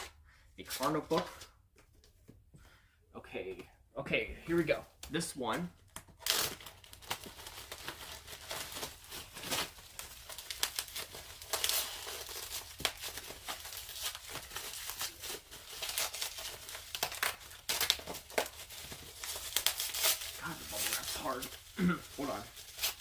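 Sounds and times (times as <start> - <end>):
bubble wrap crinkling: 6.1 - 23.0.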